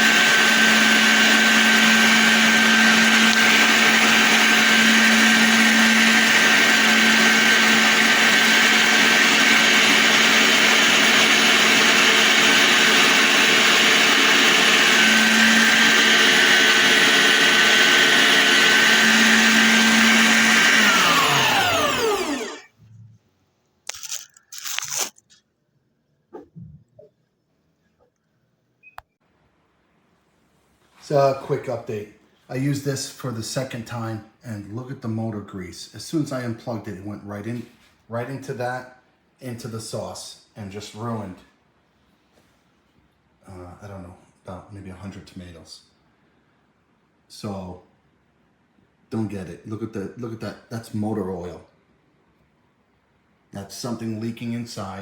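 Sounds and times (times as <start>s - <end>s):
meat grinder motor whining: 0.0s - 22.7s.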